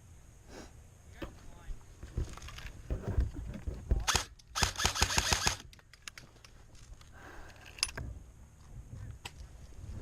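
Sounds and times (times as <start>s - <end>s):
airsoft rifle full-auto burst: 4.1s - 5.6s.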